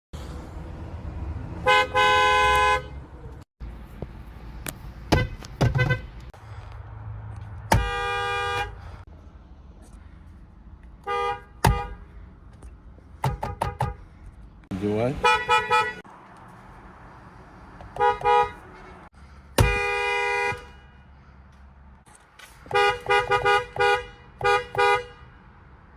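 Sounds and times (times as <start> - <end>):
car horn honks: 1.6 - 3.1, 5.1 - 6.1, 7.7 - 8.9, 11.0 - 12.1, 13.3 - 14.0, 15.1 - 16.0, 17.9 - 21.1, 22.7 - 25.4
sharp knocks: 13.2 - 14.0.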